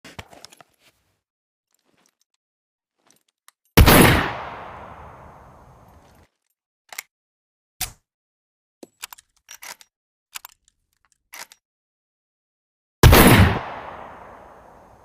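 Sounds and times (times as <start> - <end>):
shotgun blast: 3.8 - 5.6, 13.0 - 14.9.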